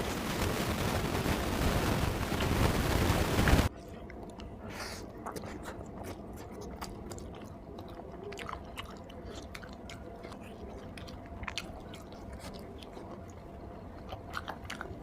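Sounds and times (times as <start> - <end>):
loud rushing noise: 0.0 - 3.7
mouth chewing wetly: 3.7 - 15.0.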